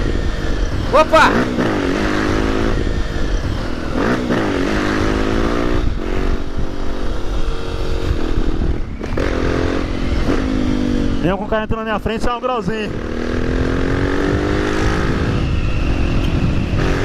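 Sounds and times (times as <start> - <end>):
motorcycle engine revving hard: 0.0 - 11.5, 12.9 - 17.0
low wind rumble: 0.0 - 17.0.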